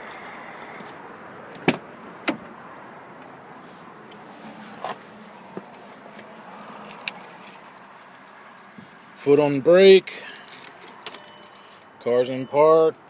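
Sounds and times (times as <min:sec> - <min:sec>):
keyring jangling: 0:00.0 - 0:00.9, 0:05.5 - 0:09.1, 0:10.2 - 0:12.0.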